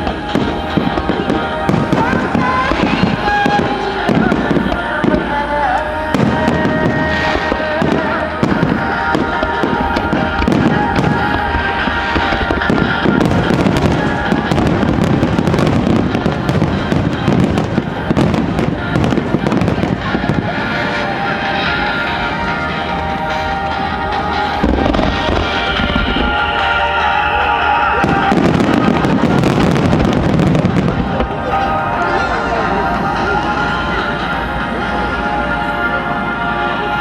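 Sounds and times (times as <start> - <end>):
fireworks bursting and banging: 0.0 - 35.2
music playing: 0.0 - 37.0.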